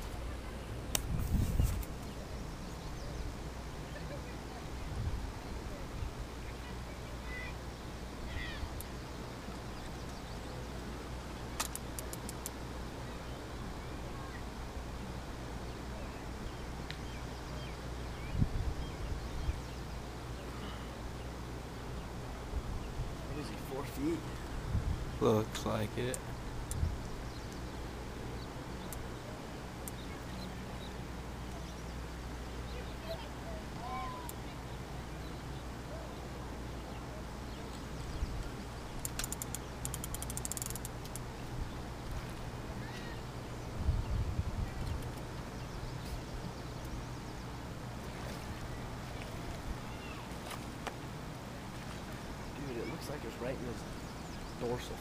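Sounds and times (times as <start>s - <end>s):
birds chirping faintly: 0.0s - 55.0s
steady low hum: 0.0s - 55.0s
fishing reel ratchet clicking: 39.0s - 41.2s.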